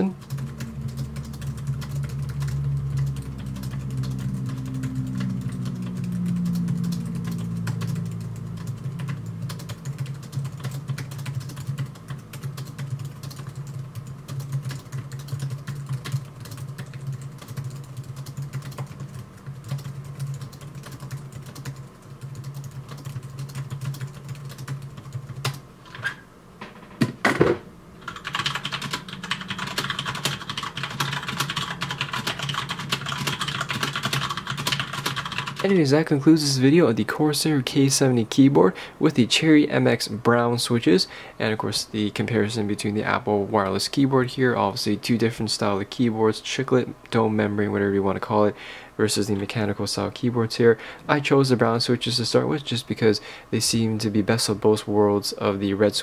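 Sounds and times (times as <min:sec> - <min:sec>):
keyboard keys clicking: 0:00.1 - 0:25.6, 0:28.0 - 0:35.7.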